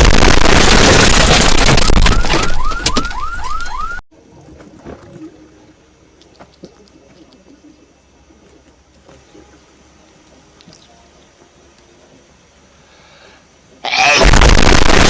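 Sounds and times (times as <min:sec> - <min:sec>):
loud distorted explosion effect: 0:00.0 - 0:02.6, 0:14.0 - 0:15.0.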